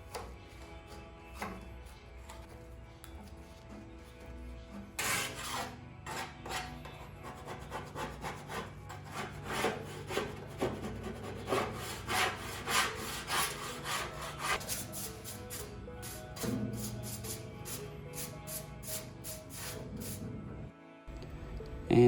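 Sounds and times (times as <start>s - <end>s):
hand scraper rasping on wood: 5.0s - 15.6s.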